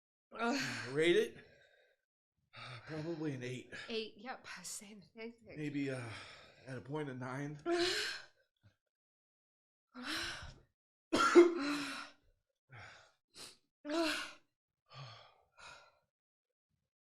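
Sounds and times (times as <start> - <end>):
person panting and sighing: 0.4 - 1.8, 5.9 - 6.7, 7.7 - 8.4, 11.5 - 12.2.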